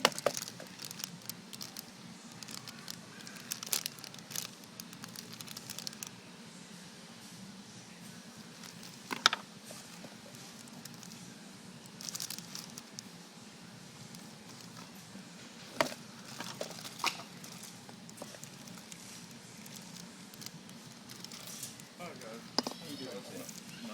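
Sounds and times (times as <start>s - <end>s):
packaging rustle: 0.0s - 6.1s, 8.5s - 11.2s, 11.9s - 13.1s, 14.2s - 23.9s.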